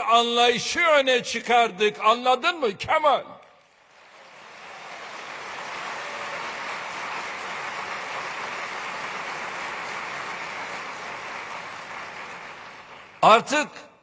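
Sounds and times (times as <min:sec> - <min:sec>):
audience applause: 0:03.9 - 0:13.5.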